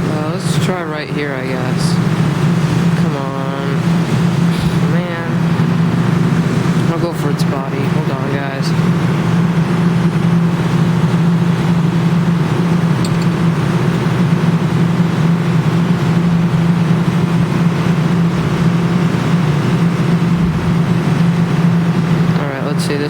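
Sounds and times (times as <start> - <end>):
claw machine humming: 0.0 - 23.0.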